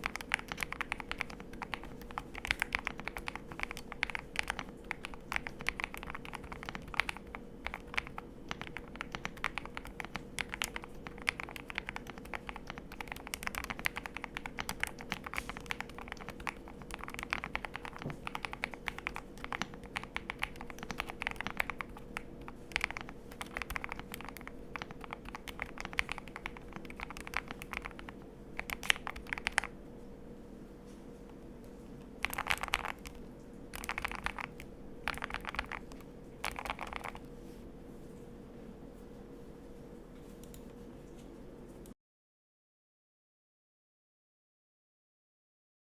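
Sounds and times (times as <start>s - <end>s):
mechanical keyboard typing: 0.0s - 29.8s, 32.0s - 37.3s.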